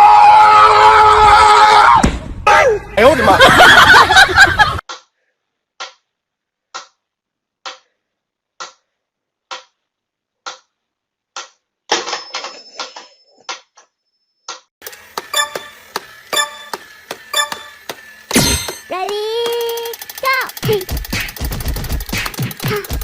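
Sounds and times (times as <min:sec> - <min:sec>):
thin high whine: 0:14.8 - 0:20.6
even ticking: 0:18.7 - 0:23.0.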